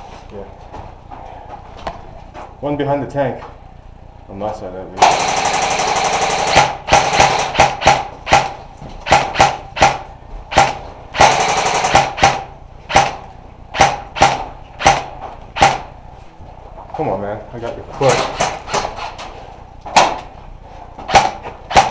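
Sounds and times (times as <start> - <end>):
airsoft rifle firing: 5.0 - 16.0, 18.1 - 19.1, 19.9 - 20.3, 21.1 - 21.9.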